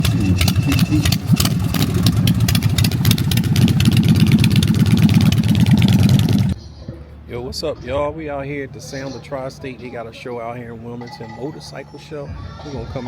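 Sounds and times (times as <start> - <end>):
motorcycle engine running: 0.0 - 6.6.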